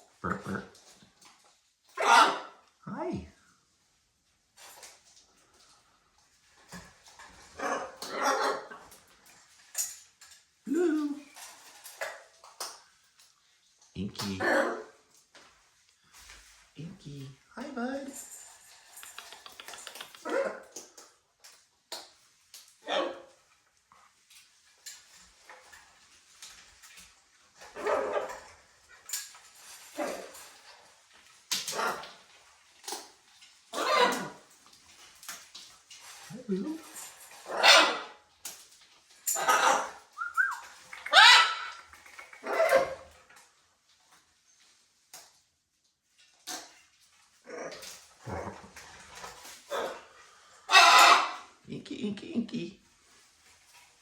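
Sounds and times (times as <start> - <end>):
macaws squawking: 40.4 - 41.8, 50.7 - 51.4.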